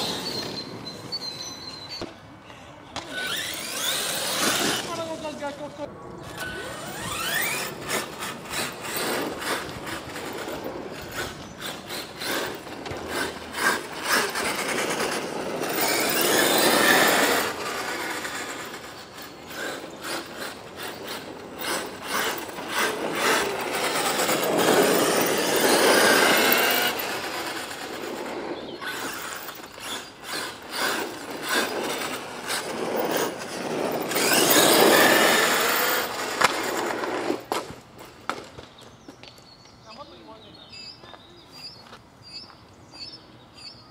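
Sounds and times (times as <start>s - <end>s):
tyres scratching over rough ground: 0.0s - 43.1s
electric motor whine: 6.2s - 36.6s.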